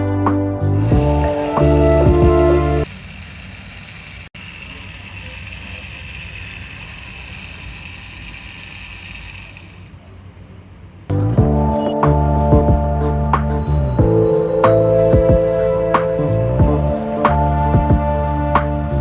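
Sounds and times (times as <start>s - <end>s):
small electric motor whirring: 0.6s - 10.1s.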